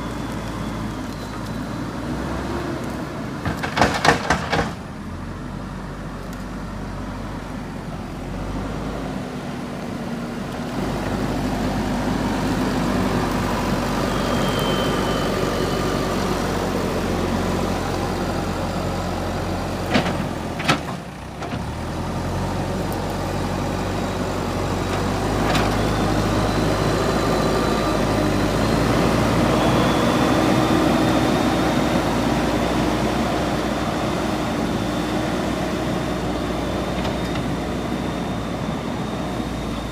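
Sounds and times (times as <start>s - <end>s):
diesel engine working: 0.0s - 39.9s
faint high whine: 12.2s - 18.6s.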